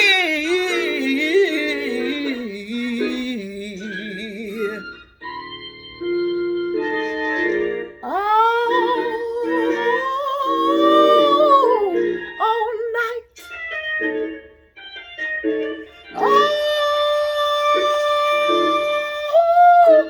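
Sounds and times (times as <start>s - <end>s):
woman singing gospel: 0.0s - 4.9s, 8.0s - 13.2s, 16.2s - 20.0s
organ chords: 0.0s - 20.0s.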